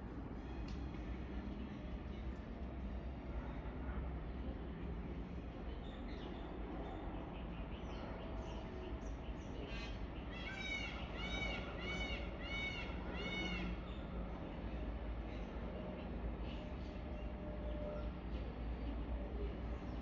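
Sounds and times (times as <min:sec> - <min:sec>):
peacock calling: 0:10.3 - 0:13.8.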